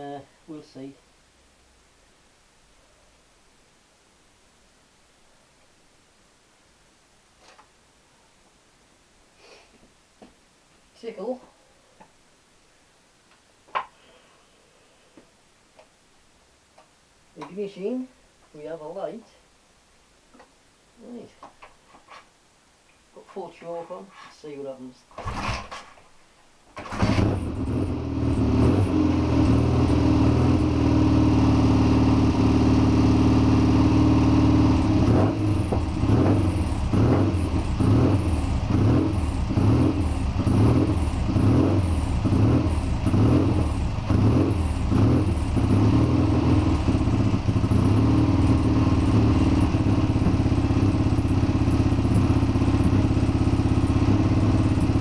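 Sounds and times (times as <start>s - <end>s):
motorcycle engine running: 26.8s - 55.0s.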